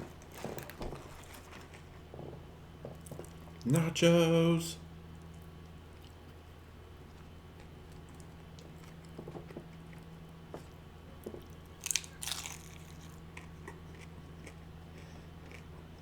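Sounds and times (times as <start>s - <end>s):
steady low hum: 0.0s - 16.0s
chewing: 5.2s - 16.0s
crunch of biting chips: 11.5s - 16.0s.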